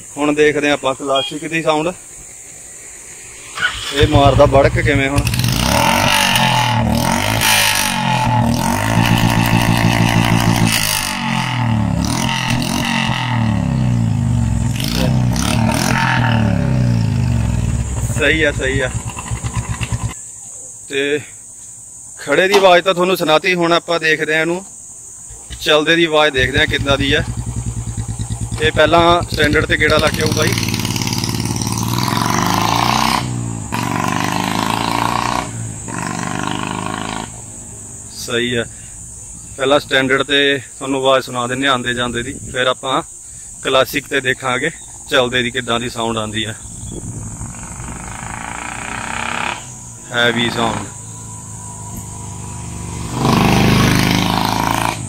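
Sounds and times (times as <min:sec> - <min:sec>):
motorcycle engine revving: 0:02.3 - 0:20.2, 0:25.3 - 0:39.6, 0:46.6 - 0:55.0.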